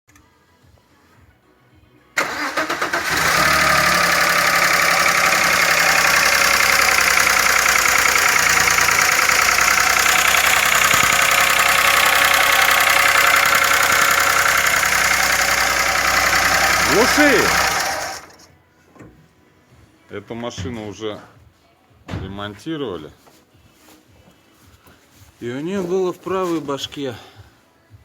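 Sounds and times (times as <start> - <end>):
car engine cranking and starting: 2.2 - 18.5
engine idling with clatter: 2.2 - 18.5.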